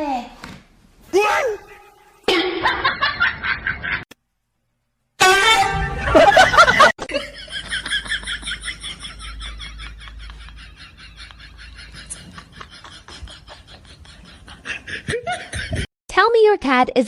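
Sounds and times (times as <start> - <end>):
person laughing breathily: 10.2 - 15.9.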